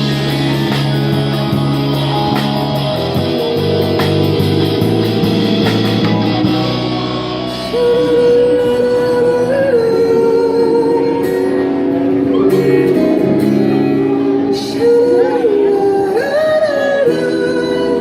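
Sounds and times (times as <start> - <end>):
electric guitar chords: 0.0 - 18.0
person singing: 6.0 - 18.0.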